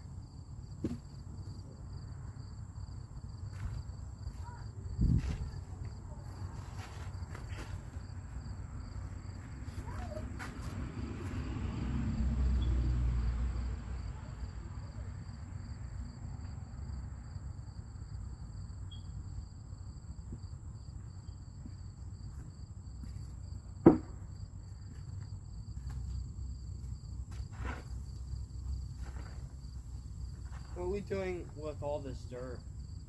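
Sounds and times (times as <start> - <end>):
insects trilling: 15.2 - 23.6, 24.3 - 33.0
sharp knock: 23.8 - 24.2.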